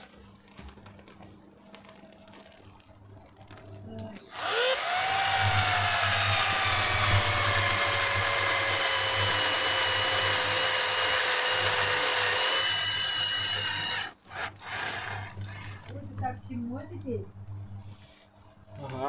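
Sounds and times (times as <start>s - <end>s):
handling noises: 0.0s - 4.3s
power drill whining: 4.3s - 16.0s.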